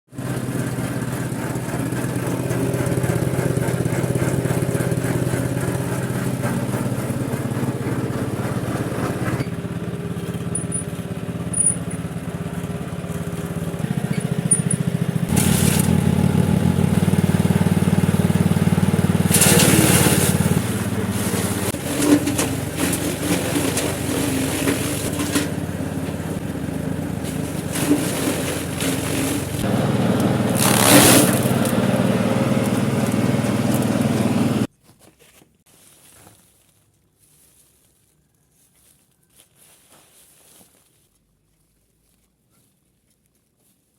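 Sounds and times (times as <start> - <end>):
feed chopper machine humming: 0.1 - 34.7.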